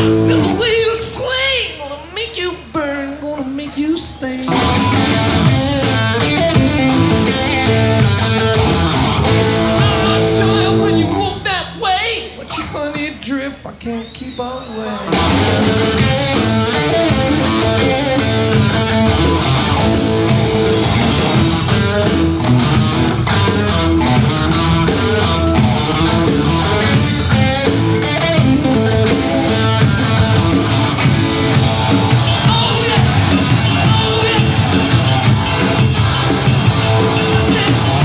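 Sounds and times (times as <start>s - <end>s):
instrumental rock band: 0.0s - 1.9s, 2.6s - 13.1s, 14.0s - 38.0s.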